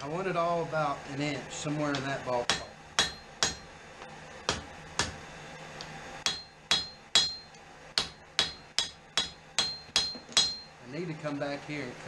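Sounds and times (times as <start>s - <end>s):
hammer striking steel on anvil: 2.5s - 3.7s, 4.5s - 5.2s, 6.2s - 10.8s.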